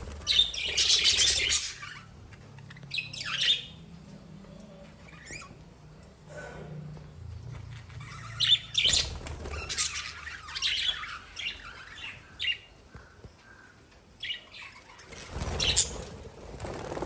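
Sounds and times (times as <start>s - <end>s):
lovebirds chirping and squawking: 0.0s - 6.2s, 7.5s - 17.0s.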